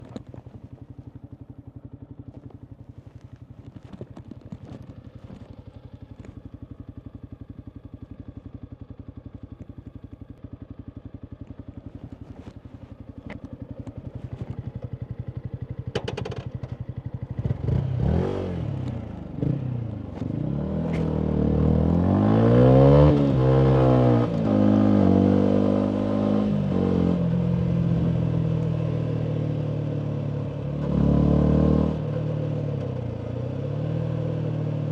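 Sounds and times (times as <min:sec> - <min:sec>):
motorcycle engine idling: 0:00.0 - 0:21.7
motorcycle accelerating through gears: 0:00.0 - 0:34.9.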